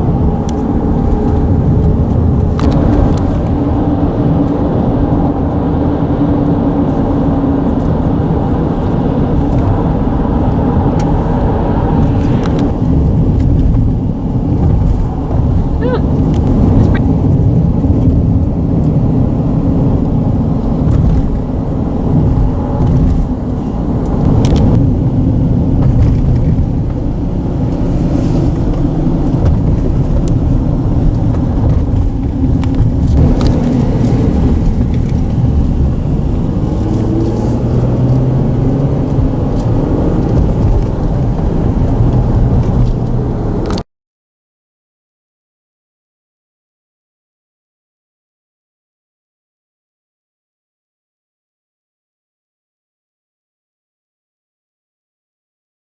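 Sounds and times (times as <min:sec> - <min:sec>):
faint engine hum: 0:00.0 - 0:43.8
traffic rumble on bridge deck: 0:00.0 - 0:43.8.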